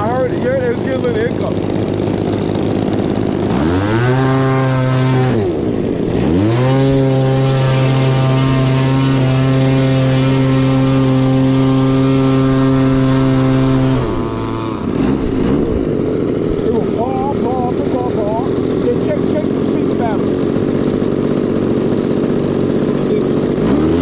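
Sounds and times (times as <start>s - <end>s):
model airplane engine: 0.0s - 24.0s.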